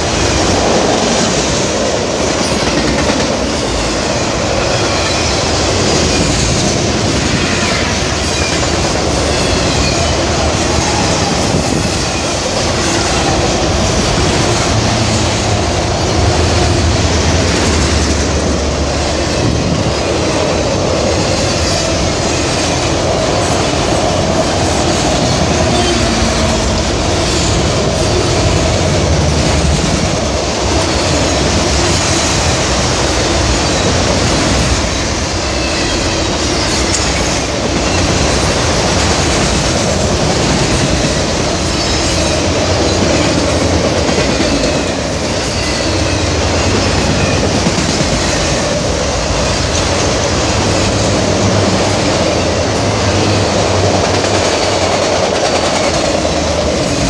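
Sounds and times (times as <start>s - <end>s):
train rumbling and rattling past: 0.0s - 57.0s
train wheel squeal: 2.3s - 15.3s, 21.1s - 28.6s, 30.7s - 51.0s.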